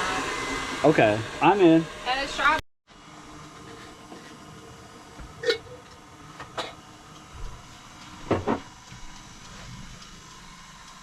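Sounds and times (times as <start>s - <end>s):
knocks of items being handled: 8.2s - 8.7s.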